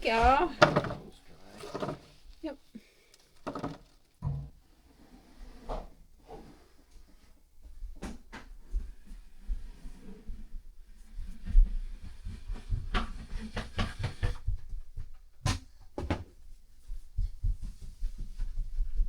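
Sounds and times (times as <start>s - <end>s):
rustling clatter: 0.0s - 4.2s
low knocks and thuds: 0.1s - 2.1s, 3.4s - 4.6s.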